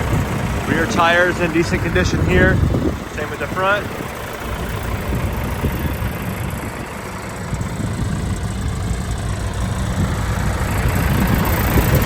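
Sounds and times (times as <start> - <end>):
diesel engine idling: 0.0 - 12.0.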